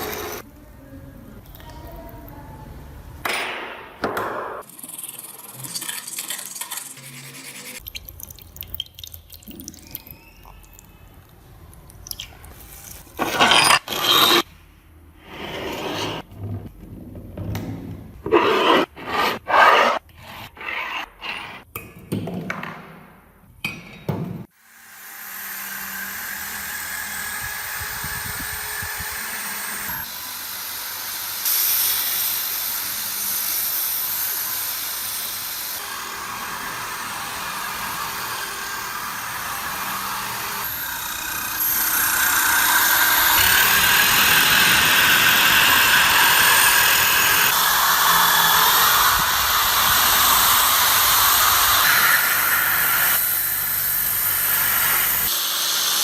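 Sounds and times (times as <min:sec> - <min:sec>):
power tool grinding metal: 0:13.2 - 0:14.5, 0:35.7 - 0:56.0.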